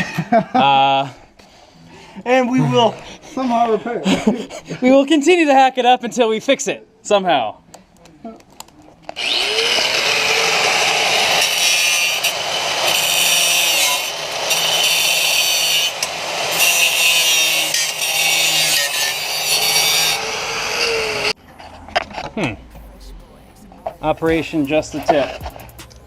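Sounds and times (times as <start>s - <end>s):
power tool grinding metal: 9.1s - 22.9s, 24.0s - 26.0s.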